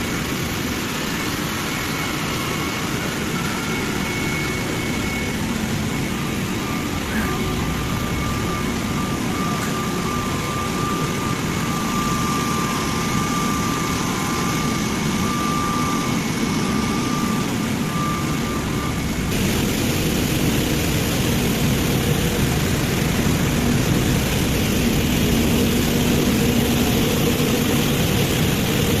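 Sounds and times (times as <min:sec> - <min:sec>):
machinery running with whine: 0:00.0 - 0:29.0
rough machinery noise: 0:19.1 - 0:29.0.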